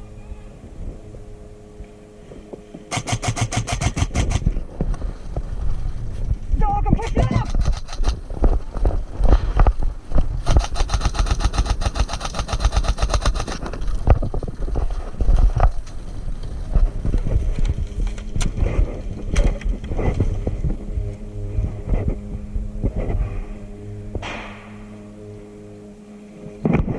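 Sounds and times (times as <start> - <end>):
rumble of movement: 0.0 - 26.9
wind on microphone: 0.0 - 26.9
airsoft gun firing: 2.9 - 4.4, 10.4 - 13.6, 24.2 - 24.8.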